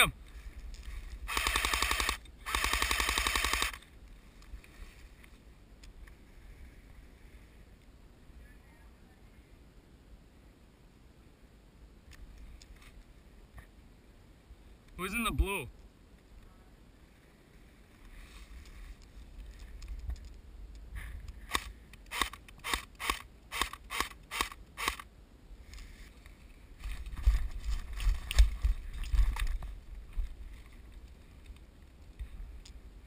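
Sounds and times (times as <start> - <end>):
airsoft rifle shots: 1.3 - 3.8.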